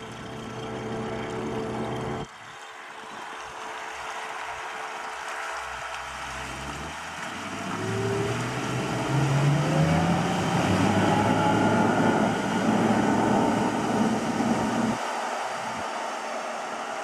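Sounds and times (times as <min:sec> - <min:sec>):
engine speeding up: 0:05.4 - 0:17.0
loud rushing noise: 0:07.6 - 0:17.0.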